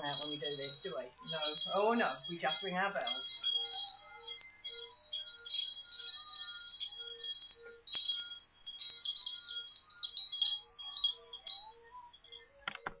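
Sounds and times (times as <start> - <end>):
hand bell ringing: 0.0 - 13.0.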